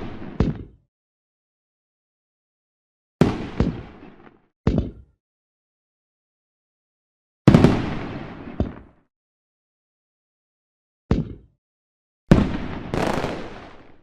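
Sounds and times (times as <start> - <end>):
fireworks bangs: 3.2 - 4.4, 7.5 - 9.0, 12.3 - 14.0
fireworks crackling: 12.8 - 14.0.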